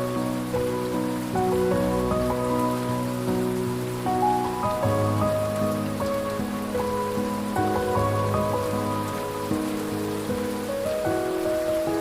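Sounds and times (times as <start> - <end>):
slow piano music: 0.0 - 12.0
steady rain: 0.0 - 12.0.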